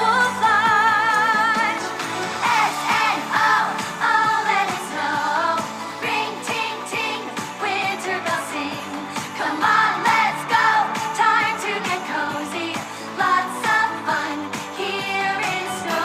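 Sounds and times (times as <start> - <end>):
pop song with female vocals: 0.0 - 16.0.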